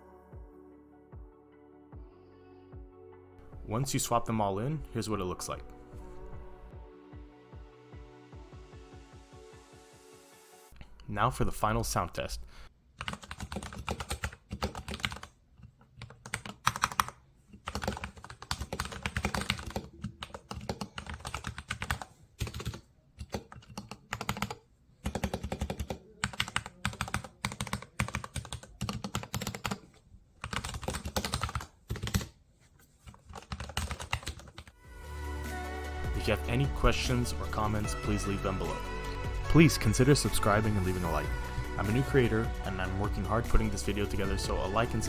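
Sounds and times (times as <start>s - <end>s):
mechanical keyboard typing: 13.0s - 15.3s, 15.9s - 29.8s, 30.4s - 32.3s, 33.1s - 34.8s.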